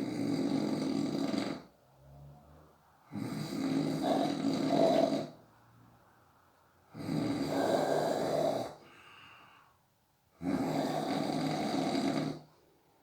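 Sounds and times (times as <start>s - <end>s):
person snoring: 0.0s - 1.7s, 3.1s - 5.4s, 6.9s - 9.2s, 10.4s - 12.5s
quiet breath out: 8.8s - 9.8s.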